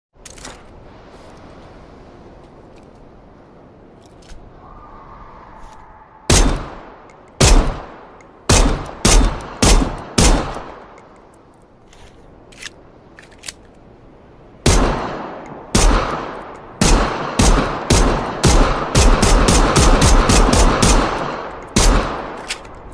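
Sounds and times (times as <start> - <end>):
pistol shots echoing: 6.3 - 10.9, 14.7 - 22.4.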